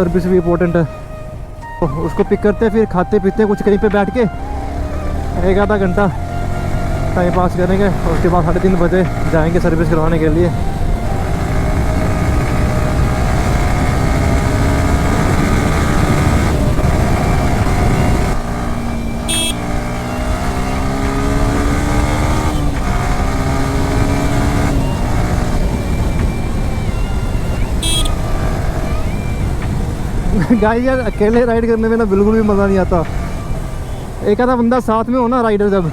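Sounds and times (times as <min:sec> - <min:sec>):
motorcycle engine running: 0:04.4 - 0:34.3
wind rumble on microphone: 0:05.8 - 0:18.8
short high-pitched beeps: 0:17.3 - 0:22.6, 0:24.7 - 0:29.4.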